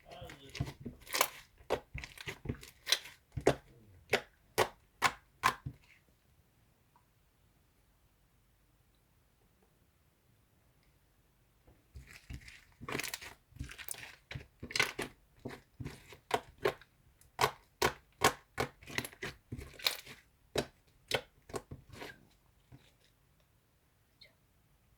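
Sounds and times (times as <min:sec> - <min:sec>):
crunching crinkling sounds: 0:00.0 - 0:03.8, 0:12.0 - 0:16.8.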